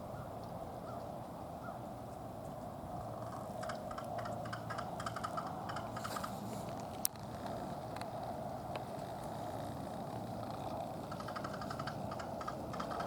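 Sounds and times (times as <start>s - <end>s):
crow rattle call: 3.2s - 6.5s, 11.0s - 13.0s.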